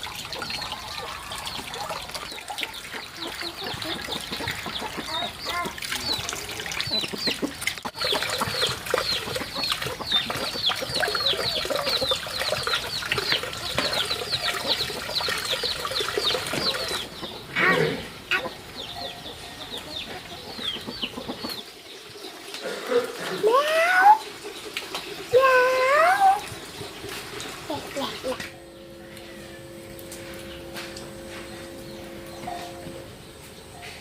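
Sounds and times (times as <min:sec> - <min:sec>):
chicks peeping: 0:00.3 - 0:22.9.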